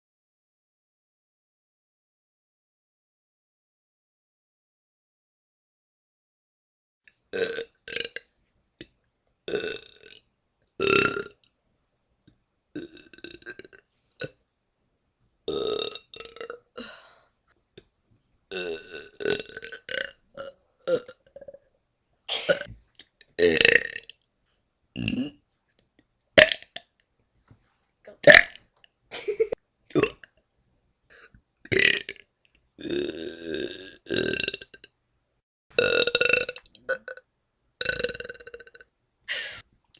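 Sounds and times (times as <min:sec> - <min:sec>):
person burping: 0:07.3 - 0:08.2, 0:09.5 - 0:10.2, 0:10.8 - 0:11.4, 0:12.8 - 0:14.4, 0:15.5 - 0:17.0, 0:18.5 - 0:21.7, 0:22.3 - 0:22.7, 0:23.4 - 0:24.1, 0:25.0 - 0:25.4, 0:26.4 - 0:26.8, 0:28.2 - 0:28.6, 0:29.2 - 0:30.3, 0:31.7 - 0:32.2, 0:32.8 - 0:34.9, 0:35.8 - 0:37.2, 0:37.8 - 0:39.6.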